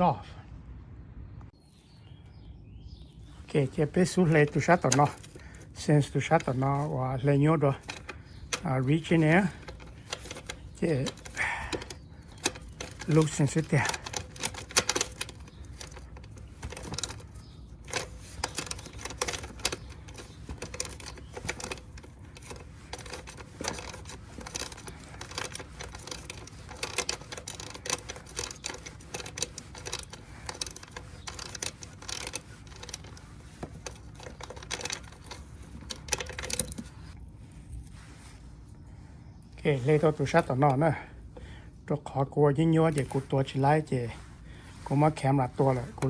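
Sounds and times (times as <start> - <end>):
tools clicking on plastic housing: 3.8 - 37.2, 42.8 - 43.3.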